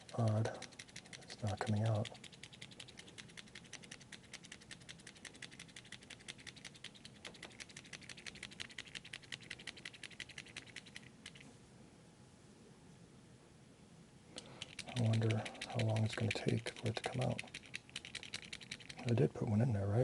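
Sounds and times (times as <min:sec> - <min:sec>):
mechanical pencil clicking: 0:00.0 - 0:11.4, 0:14.4 - 0:19.2.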